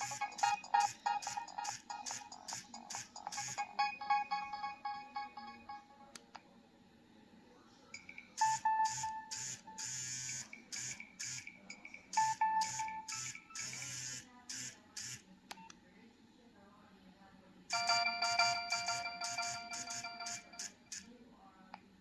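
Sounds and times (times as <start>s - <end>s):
polyphonic phone ringtone: 0.0s - 6.0s, 8.0s - 14.2s, 17.7s - 20.9s.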